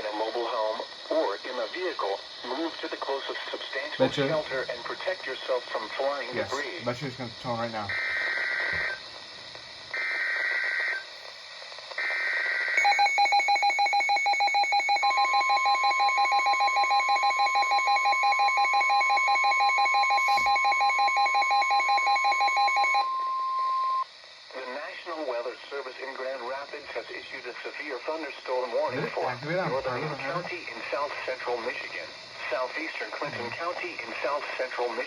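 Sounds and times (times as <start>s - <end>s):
alarm beeping in rapid pulses: 12.0s - 24.0s
steady warning alarm tone: 12.0s - 24.0s, 28.9s - 30.6s
voice announcement: 28.8s - 32.0s, 33.1s - 33.6s.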